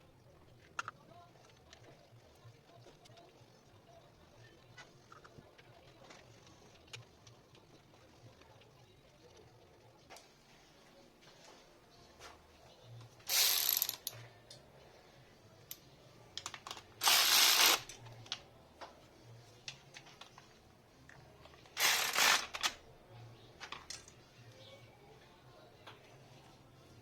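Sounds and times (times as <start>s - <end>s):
hand tool ratcheting: 13.3s - 14.2s, 16.4s - 18.0s, 21.8s - 22.8s.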